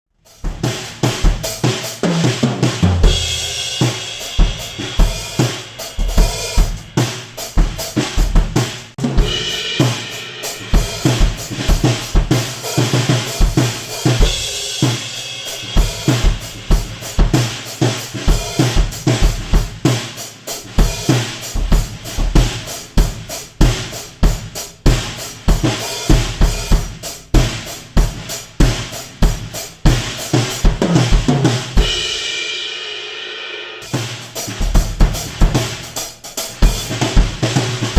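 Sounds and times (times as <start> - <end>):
bass drum kicks: 2.3 - 9.6, 34.5 - 35.8
cymbal crashes: 9.1 - 11.8.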